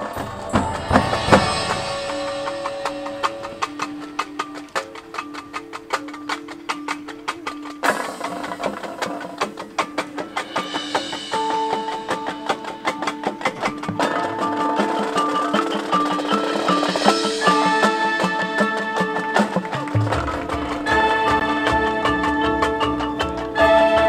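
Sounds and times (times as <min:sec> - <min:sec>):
cymbal splash: 0:00.0 - 0:03.9
fast percussion strokes: 0:00.0 - 0:24.0
marching band playing: 0:00.0 - 0:24.0.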